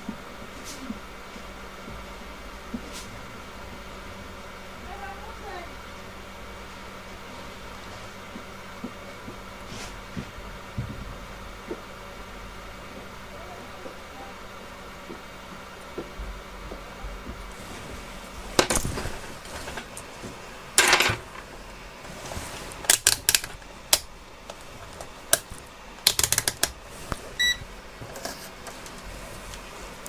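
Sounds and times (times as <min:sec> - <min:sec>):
small tools clicking and tapping: 0:22.9 - 0:26.8
electronic beep: 0:27.4 - 0:27.6.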